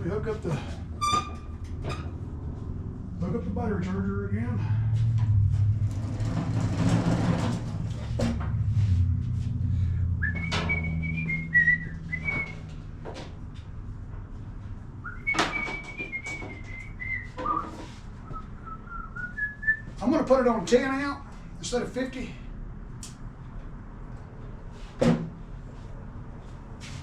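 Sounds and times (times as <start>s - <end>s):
low steady hum: 0.0s - 17.2s
man whistling: 10.2s - 12.7s, 15.0s - 19.9s.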